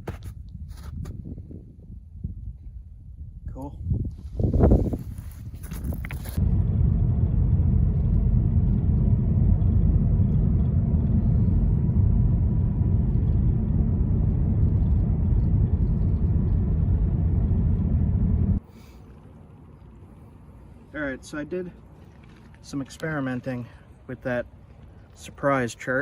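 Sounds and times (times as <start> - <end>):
loud low rumbling: 3.8 - 20.9.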